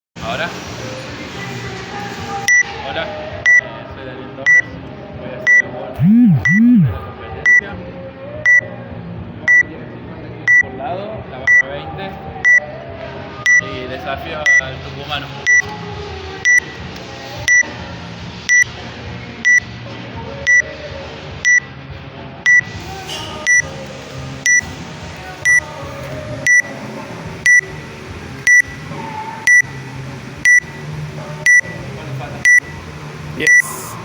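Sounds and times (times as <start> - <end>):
short high electronic beep: 6.0 - 7.0, 33.4 - 33.9.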